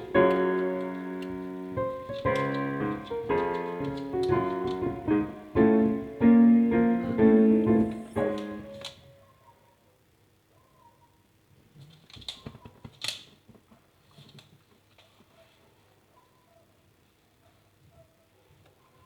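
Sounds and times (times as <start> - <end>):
piano-like keyboard chords: 0.0 - 9.2.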